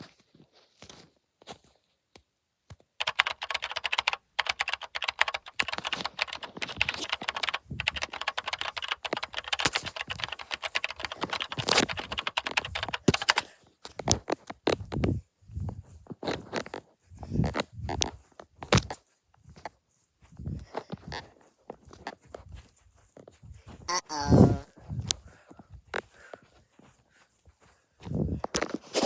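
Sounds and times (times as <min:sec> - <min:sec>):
rapid sharp clicks: 0:03.0 - 0:13.5.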